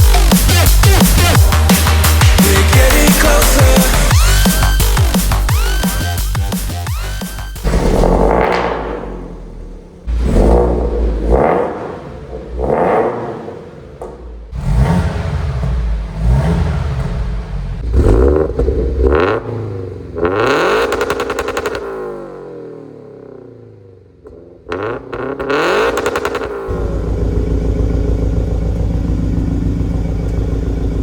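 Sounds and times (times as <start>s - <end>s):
car engine idling: 0.0s - 31.0s
car engine revving: 0.0s - 31.0s.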